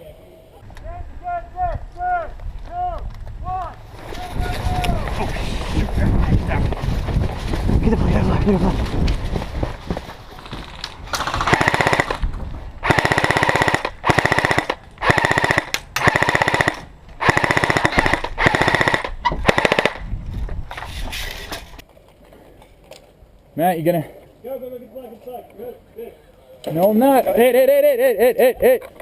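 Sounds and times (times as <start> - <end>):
airsoft rifle full-auto bursts: 11.2 - 12.2, 12.8 - 20.0.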